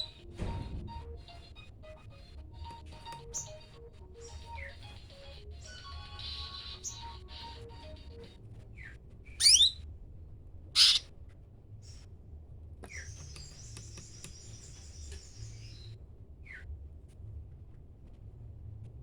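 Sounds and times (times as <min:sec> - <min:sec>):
songbird calling and trilling: 0:06.1 - 0:07.9, 0:08.8 - 0:09.8, 0:10.8 - 0:11.0.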